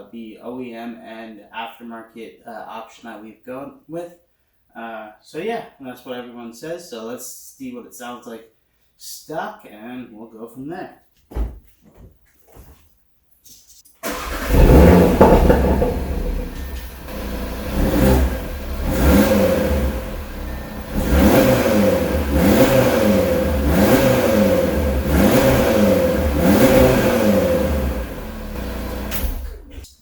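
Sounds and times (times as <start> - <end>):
car engine starting and revving: 14.0 - 30.0.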